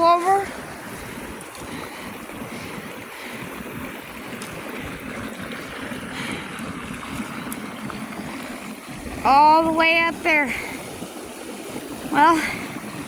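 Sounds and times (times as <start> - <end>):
floodwater rushing: 0.0 - 13.0.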